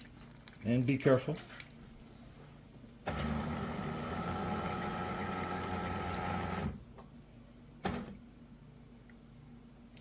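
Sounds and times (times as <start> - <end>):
espresso machine pump humming: 3.1 - 6.8.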